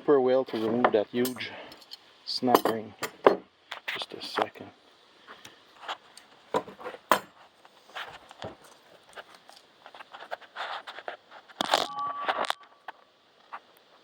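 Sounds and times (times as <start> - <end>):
metal tools clicking and clinking: 1.2 - 3.4.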